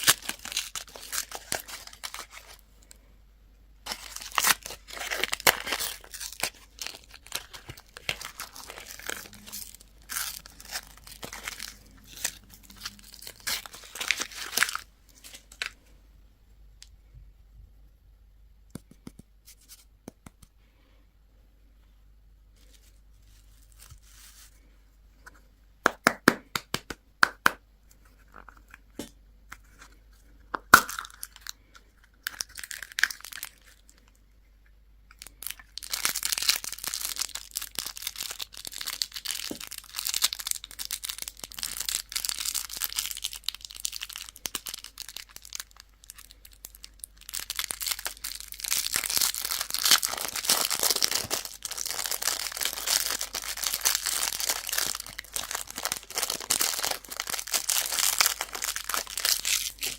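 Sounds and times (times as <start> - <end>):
candy wrapper crinkling and tearing: 0.0 - 3.0, 3.9 - 15.8, 30.6 - 34.2, 35.1 - 59.9.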